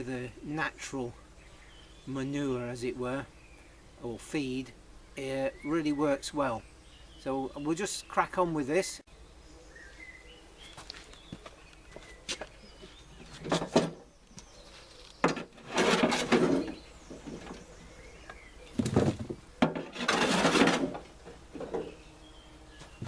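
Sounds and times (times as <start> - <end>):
scraping or shovelling: 15.5 - 16.8, 19.8 - 21.0.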